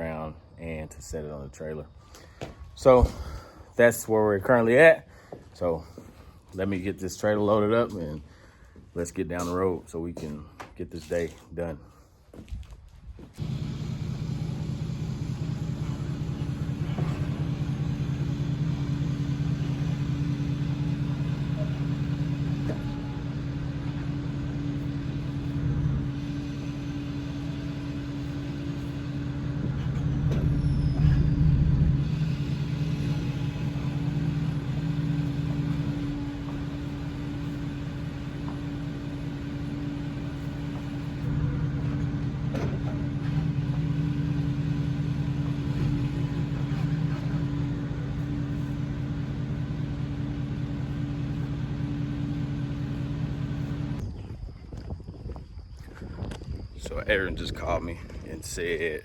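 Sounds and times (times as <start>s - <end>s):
vehicle engine running: 13.4s - 54.0s.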